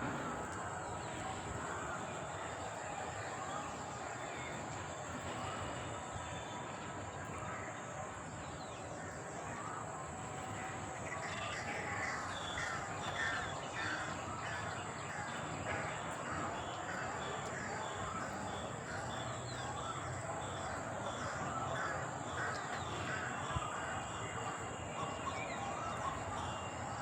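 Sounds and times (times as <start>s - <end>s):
birds calling: 10.4s - 27.0s.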